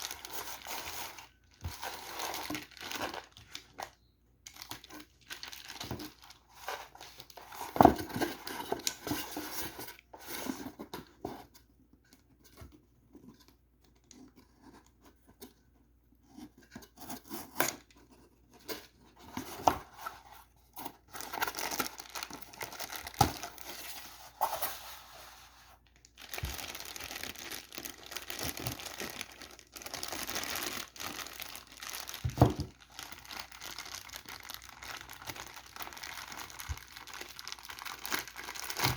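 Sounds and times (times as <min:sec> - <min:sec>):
plastic wrapping crinkling: 0:00.0 - 0:09.8, 0:21.0 - 0:38.9.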